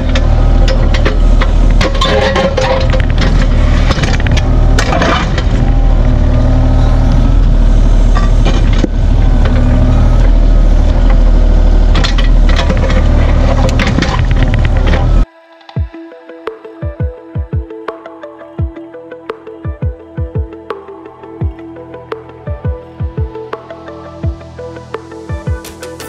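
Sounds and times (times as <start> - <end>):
metal clanks and scraping: 0.0 - 5.7, 8.1 - 9.8, 11.9 - 15.2
heavy equipment engine running: 0.0 - 15.3.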